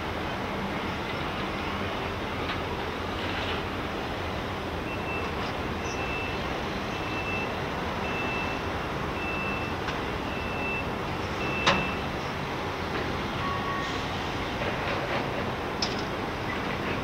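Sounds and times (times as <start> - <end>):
industrial background noise: 0.0 - 17.0
vehicle backup alarm beeping: 4.9 - 12.2, 13.4 - 14.0.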